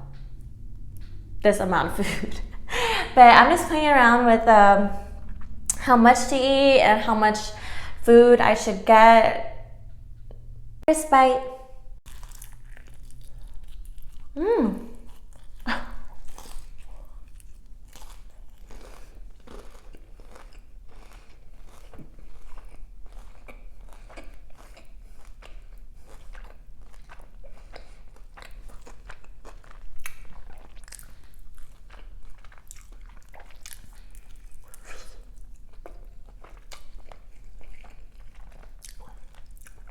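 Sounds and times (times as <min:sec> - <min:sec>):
crunching fried chicken: 0:12.0 - 0:14.4, 0:15.0 - 0:39.9
wet chewing: 0:12.0 - 0:39.9.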